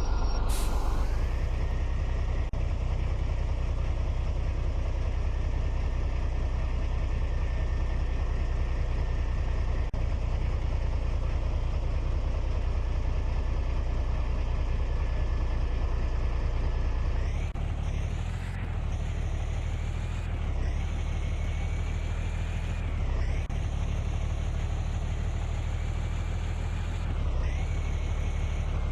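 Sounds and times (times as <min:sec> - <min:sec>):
high motor whine: 0:00.0 - 0:02.5.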